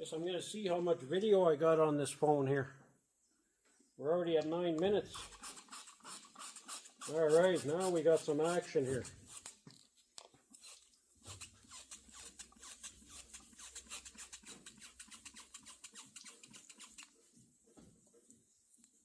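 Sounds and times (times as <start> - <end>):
sandpaper scratching strokes: 5.1 - 9.6, 10.6 - 17.2.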